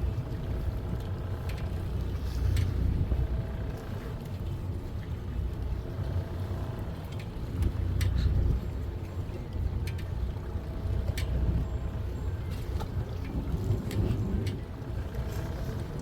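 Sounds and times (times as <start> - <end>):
boat engine low rumble: 0.0 - 16.0
faint clicks: 9.0 - 10.2, 11.1 - 11.4.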